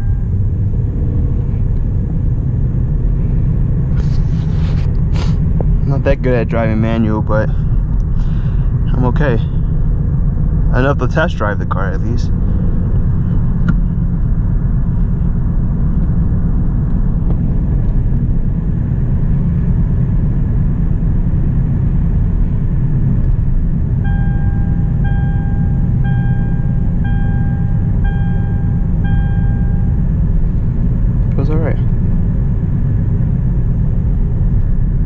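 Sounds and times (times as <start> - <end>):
dashboard warning chime beeping: 0.0 - 0.4, 24.0 - 30.0
car engine and road rumble: 0.0 - 35.0.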